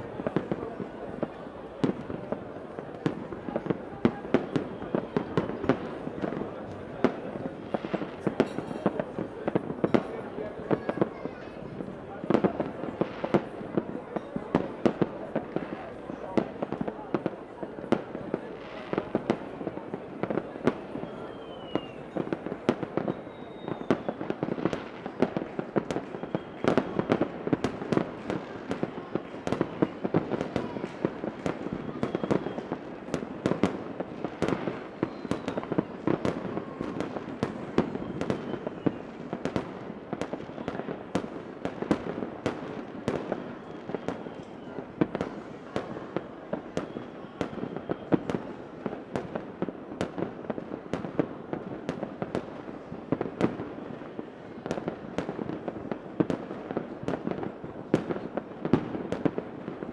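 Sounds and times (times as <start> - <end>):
fireworks bangs and crackles: 0.0 - 59.9
fireworks whistles: 20.6 - 41.3, 43.0 - 48.6.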